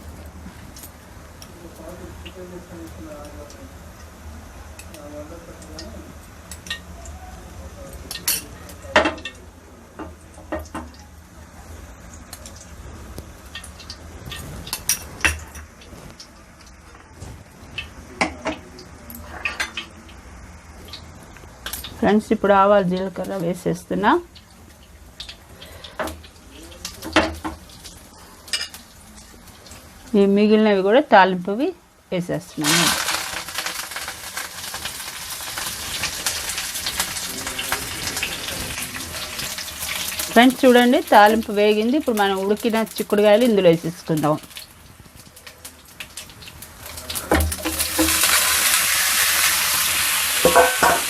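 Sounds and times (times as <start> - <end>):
spices sizzling and popping in oil: 0.0 - 51.0
utensils clinking against pans: 8.0 - 9.4, 13.5 - 15.8, 17.8 - 20.0, 32.6 - 44.4, 46.2 - 48.9, 50.4 - 51.0.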